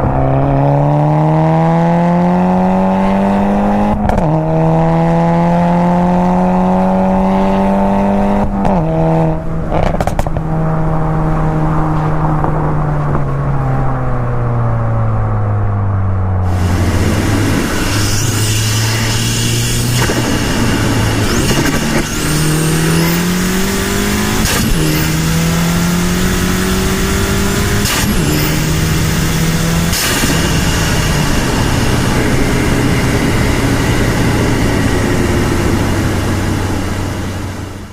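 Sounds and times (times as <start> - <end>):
car engine revving under load: 0.0 - 37.9
sharp exhaust crack: 16.4 - 37.9.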